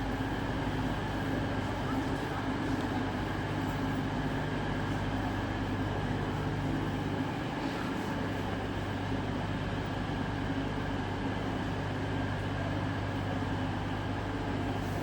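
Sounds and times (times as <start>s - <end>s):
diesel train engine humming: 0.0s - 15.0s.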